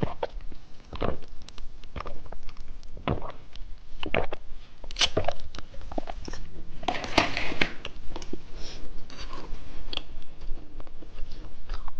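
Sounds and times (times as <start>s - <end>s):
person chewing ice cream: 0.0s - 6.5s, 9.1s - 11.9s.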